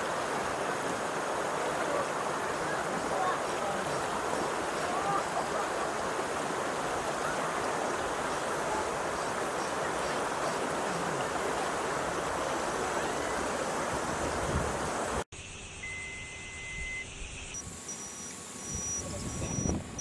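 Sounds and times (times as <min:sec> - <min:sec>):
flowing water rushing: 0:00.0 - 0:15.3.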